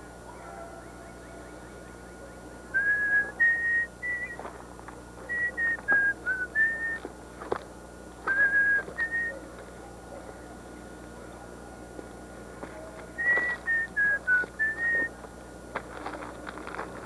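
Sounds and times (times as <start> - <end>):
person whistling a tune: 2.8 - 4.4, 5.3 - 7.0, 8.3 - 9.3, 13.2 - 15.1.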